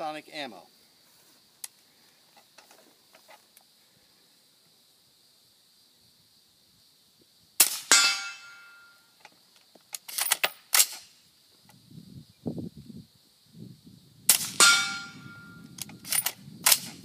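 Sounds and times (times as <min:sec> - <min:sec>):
metallic clang of steel target: 0:07.6 - 0:09.0, 0:14.3 - 0:16.9
sharp cracks and clicks: 0:09.9 - 0:11.1, 0:15.8 - 0:17.0
suppressed rifle shot: 0:14.3 - 0:17.0.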